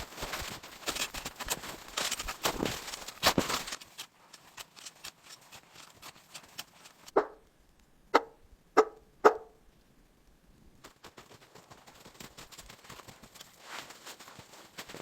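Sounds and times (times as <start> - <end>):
noisy rustle: 0.0 - 7.1.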